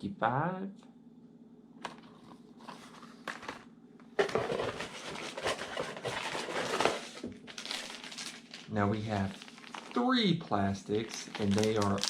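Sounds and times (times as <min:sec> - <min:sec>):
plastic packaging crinkling: 0:04.2 - 0:10.1, 0:10.9 - 0:12.0.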